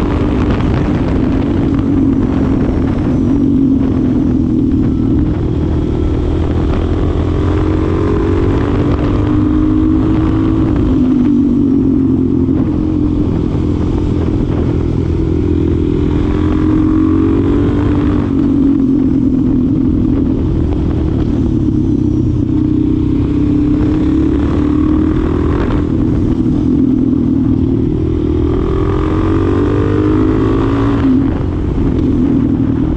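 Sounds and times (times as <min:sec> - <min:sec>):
motorcycle engine revving: 0:00.0 - 0:32.9.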